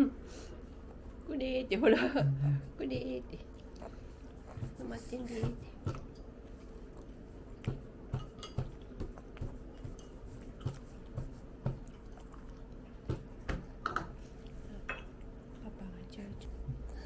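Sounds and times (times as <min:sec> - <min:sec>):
faint steady hum: 0:00.0 - 0:17.0
cutlery clinking against dishes: 0:08.2 - 0:08.8.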